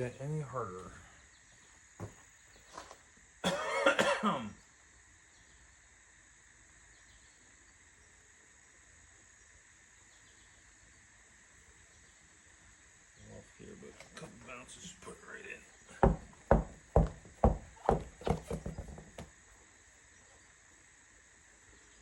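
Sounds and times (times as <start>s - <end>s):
faint high hiss: 0.0s - 16.5s
person coughing: 3.4s - 4.5s.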